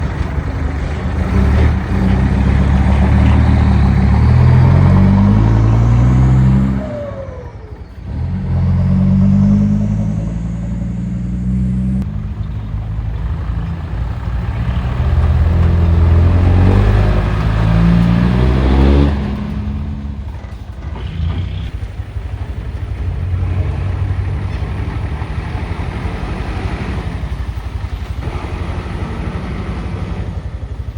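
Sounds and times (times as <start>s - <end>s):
excavator diesel engine and hydraulics: 0.0s - 30.9s.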